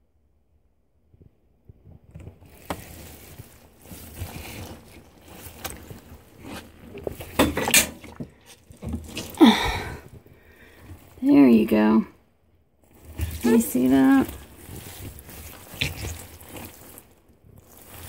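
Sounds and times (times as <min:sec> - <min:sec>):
wet towels squeezed: 0:02.1 - 0:11.2, 0:12.8 - 0:18.0
water splashing and dripping: 0:02.5 - 0:09.9, 0:12.9 - 0:18.0.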